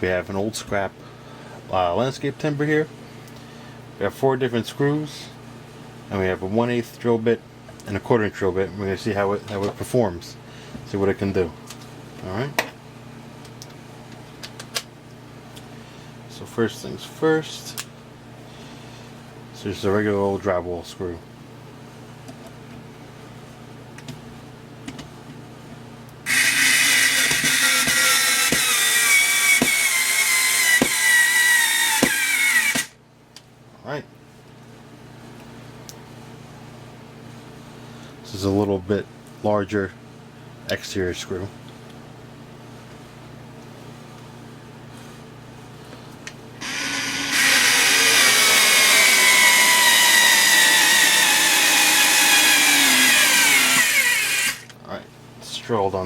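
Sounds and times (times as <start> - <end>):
cordless screwdriver motor whining: 26.3 - 32.9, 46.6 - 54.7.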